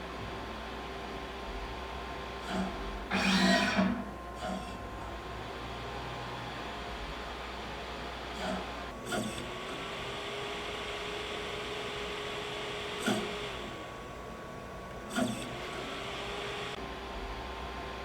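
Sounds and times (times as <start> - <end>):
small motor tone: 2.4 - 5.7, 8.3 - 14.2, 15.0 - 16.8.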